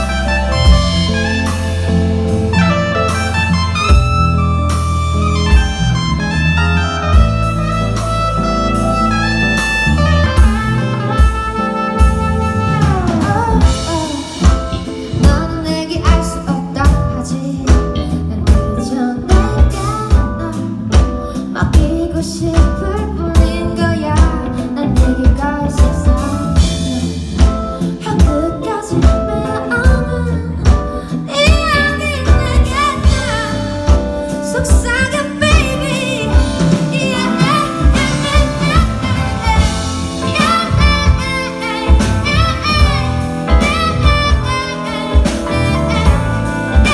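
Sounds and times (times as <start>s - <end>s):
pitched instrument lines: 0.0s - 15.5s, 31.3s - 46.9s
wavering melodic lead: 0.0s - 16.0s, 31.2s - 46.9s
drum kit steady beat: 0.0s - 46.9s.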